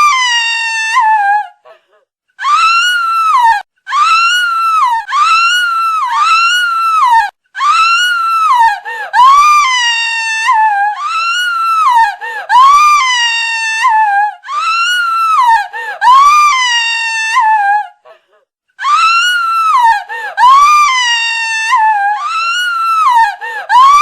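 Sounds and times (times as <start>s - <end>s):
woman screaming: 2.4s - 17.8s, 18.8s - 24.0s.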